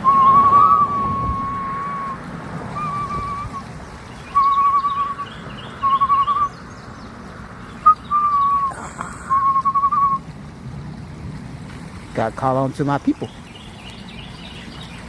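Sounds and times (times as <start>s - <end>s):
bird warbling trills: 2.8s - 6.9s
faint high bird chirps: 4.2s - 6.8s.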